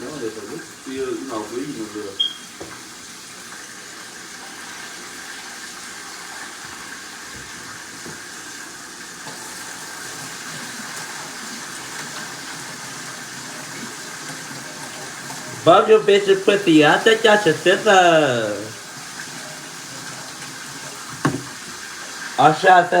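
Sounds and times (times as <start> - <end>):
tap running into a sink: 2.2 - 2.9, 6.5 - 8.6, 19.9 - 22.3.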